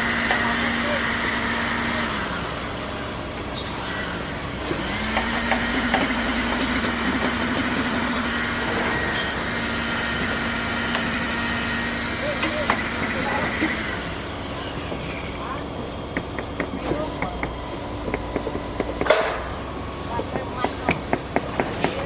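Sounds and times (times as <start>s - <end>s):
engine running: 0.0s - 22.0s
scattered knocks: 14.7s - 22.0s.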